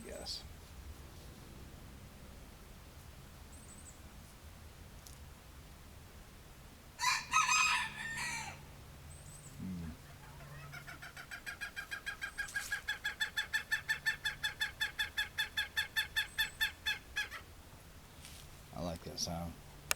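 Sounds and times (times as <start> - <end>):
rooster crowing: 7.0 - 8.7, 10.0 - 12.3
chickens rapid repeated calls: 7.0 - 17.5.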